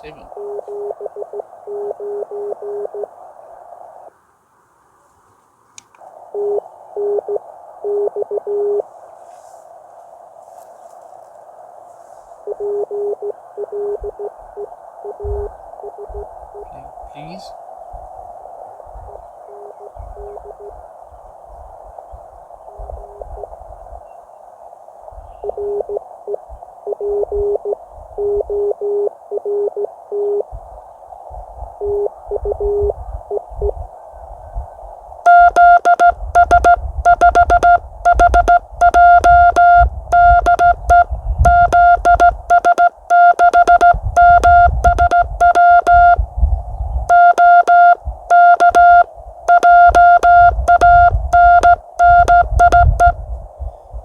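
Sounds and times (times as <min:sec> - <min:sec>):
faint morse code beeps: 0:00.0 - 0:03.1, 0:06.3 - 0:08.9, 0:12.4 - 0:17.4, 0:19.5 - 0:20.7, 0:22.9 - 0:23.5, 0:25.4 - 0:30.5, 0:31.8 - 0:33.8, 0:35.3 - 0:46.3, 0:47.1 - 0:53.2
loud buzzy morse sidetone: 0:00.0 - 0:03.1, 0:06.2 - 0:08.9, 0:12.4 - 0:17.4, 0:25.4 - 0:30.5, 0:31.8 - 0:33.7, 0:35.3 - 0:46.3, 0:47.1 - 0:53.2
receiver hiss: 0:00.0 - 0:04.3, 0:05.8 - 0:17.8, 0:35.3 - 0:46.4, 0:47.1 - 0:53.2.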